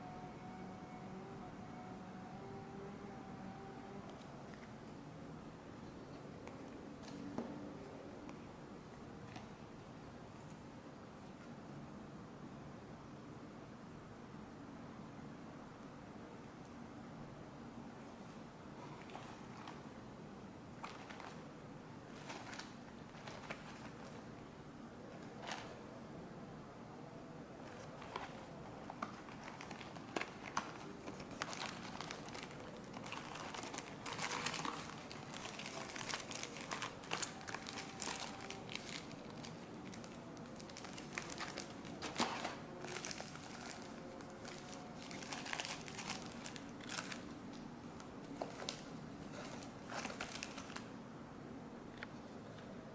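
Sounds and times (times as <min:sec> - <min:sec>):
plastic packaging crinkling: 0:22.1 - 0:24.2, 0:27.7 - 0:47.6, 0:48.2 - 0:50.9.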